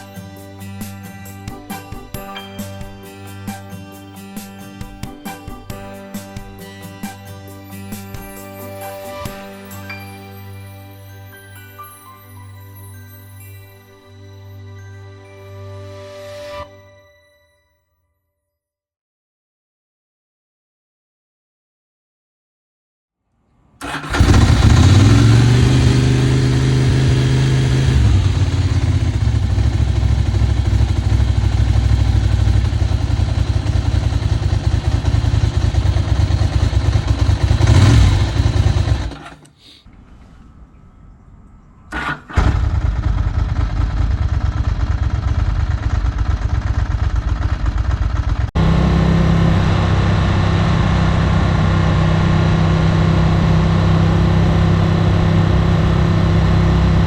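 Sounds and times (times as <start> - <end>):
motorcycle engine idling: 23.8 - 39.4, 42.6 - 51.7.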